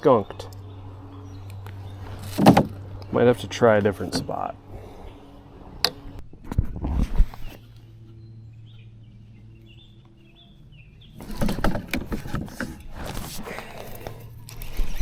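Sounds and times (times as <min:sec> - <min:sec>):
small birds chirping: 0:00.0 - 0:06.3, 0:07.3 - 0:12.2.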